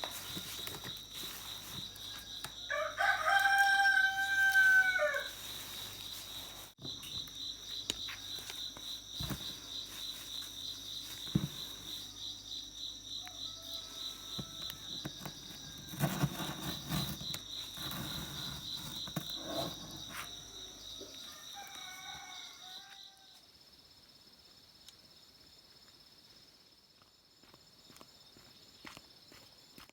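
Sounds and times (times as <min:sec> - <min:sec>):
handling knocks and rustling: 0:00.0 - 0:02.6, 0:03.4 - 0:12.1
insects trilling: 0:00.0 - 0:29.8.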